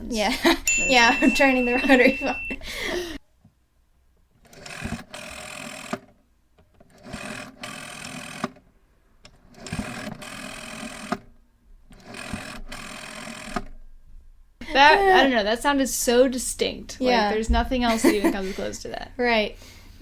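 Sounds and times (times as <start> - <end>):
rotary telephone dial whirring: 4.4 - 6.1, 6.8 - 8.6, 9.5 - 11.3, 11.9 - 13.7.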